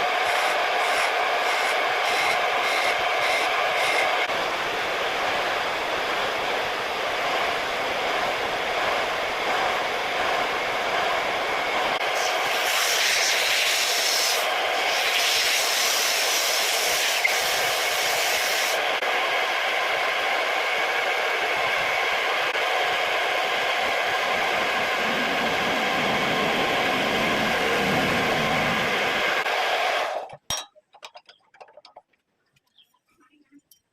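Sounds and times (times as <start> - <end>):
wood lathe motor hum: 0.0 - 12.6
tool hissing on spinning wood: 0.0 - 19.0.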